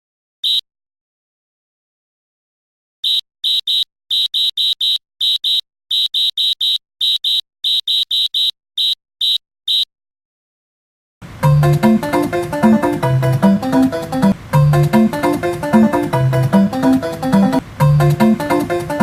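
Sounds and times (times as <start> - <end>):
high-pitched electronic beeps: 3.0 - 9.9
music: 11.4 - 19.0.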